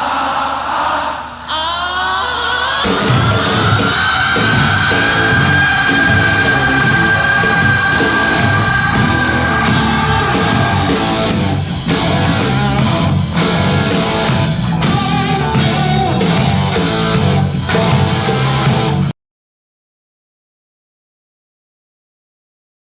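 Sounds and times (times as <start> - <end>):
loud rock band with guitar: 2.7 - 19.1.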